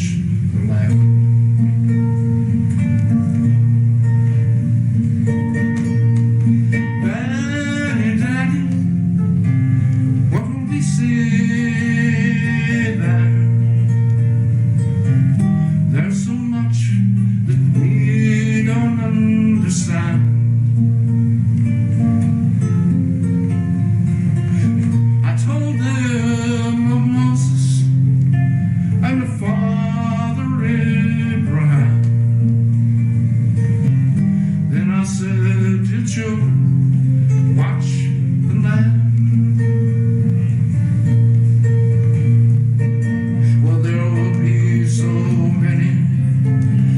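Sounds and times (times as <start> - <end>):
strummed acoustic guitar: 0.0 - 46.9
person singing: 6.4 - 9.0, 10.3 - 14.0, 15.8 - 20.5, 24.5 - 28.1, 28.7 - 32.5, 34.7 - 40.7, 42.3 - 46.9
person singing a hymn: 10.3 - 13.7, 29.0 - 32.2, 43.5 - 46.7.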